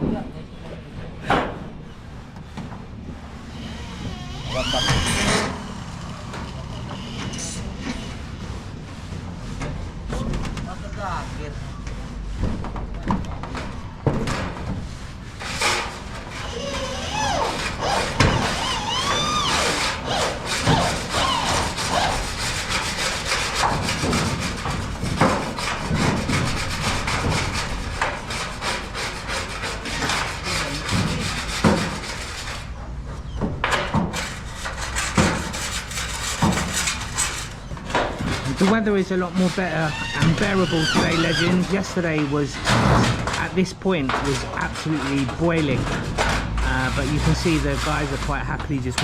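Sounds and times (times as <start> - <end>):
rasping sawing strokes: 3.4 - 9.5, 14.9 - 32.7, 34.1 - 49.0
sharp knocks: 17.8 - 32.2, 33.4 - 38.8.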